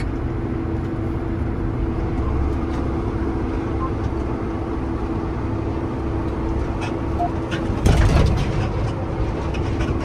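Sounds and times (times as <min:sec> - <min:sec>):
tractor engine rumble: 0:00.0 - 0:10.0.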